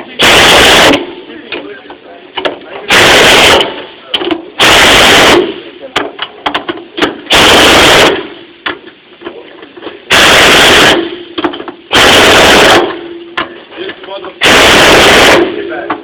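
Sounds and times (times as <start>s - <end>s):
shop noise: 0.0s - 16.0s
pneumatic impact wrench hammering: 0.2s - 1.1s, 2.9s - 3.9s, 4.6s - 5.6s, 6.6s - 8.4s, 10.1s - 13.1s, 14.4s - 15.6s.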